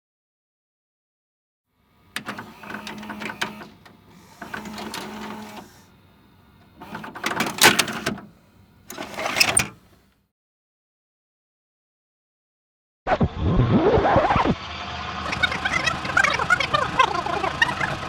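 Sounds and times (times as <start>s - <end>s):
steady motor hum: 1.8s - 10.1s
tape mechanism whirring and clicking: 2.0s - 10.2s.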